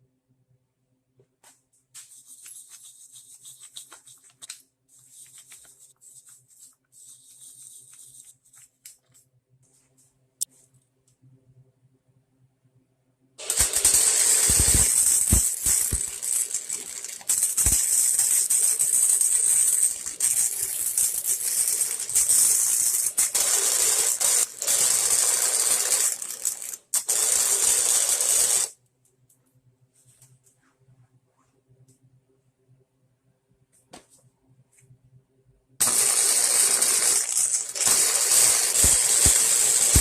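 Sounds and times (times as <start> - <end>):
welder arc crackling: 13.4 - 28.1, 35.8 - 40.0.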